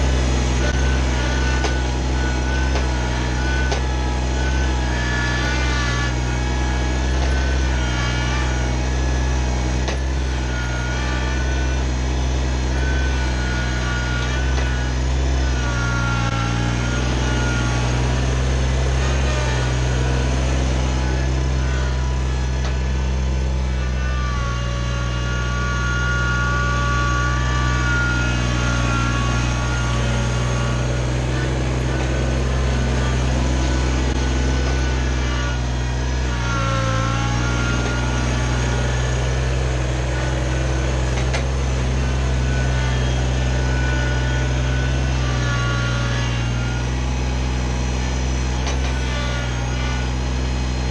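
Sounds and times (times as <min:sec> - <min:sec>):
tractor diesel engine running: 0:00.0 - 0:50.9.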